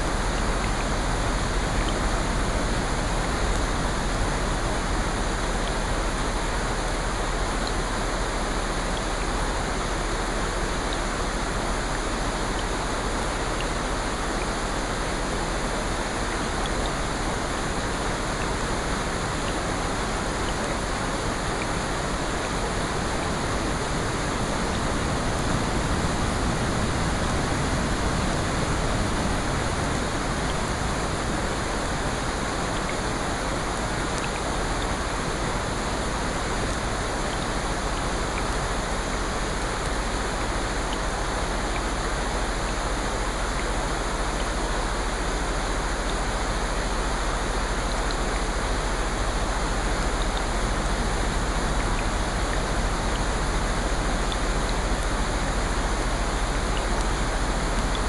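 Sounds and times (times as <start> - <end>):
rain: 0.0 - 58.0
ocean surf: 20.4 - 41.9
faint ticks: 56.5 - 58.0.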